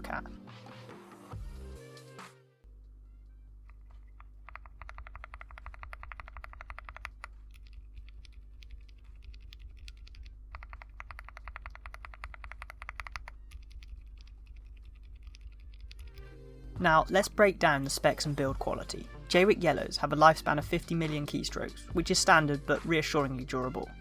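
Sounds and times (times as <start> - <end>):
mechanical keyboard typing: 3.7 - 16.2.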